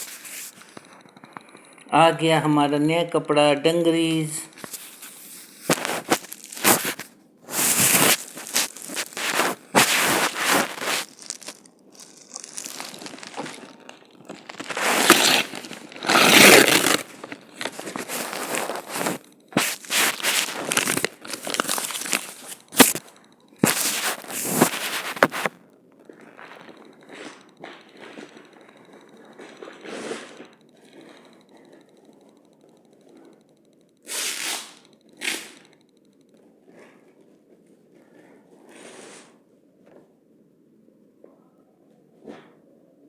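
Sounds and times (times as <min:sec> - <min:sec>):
packaging rustling and crinkling: 0:00.0 - 0:01.7, 0:04.6 - 0:30.5.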